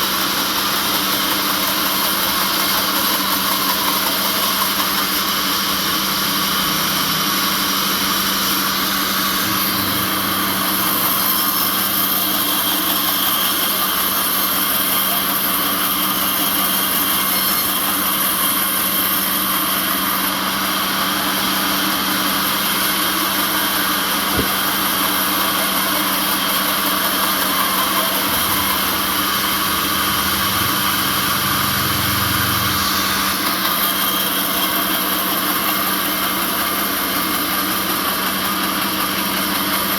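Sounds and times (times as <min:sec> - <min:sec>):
high-pitched machine whine: 0:00.0 - 0:39.9
sawmill machinery drone: 0:00.0 - 0:39.9.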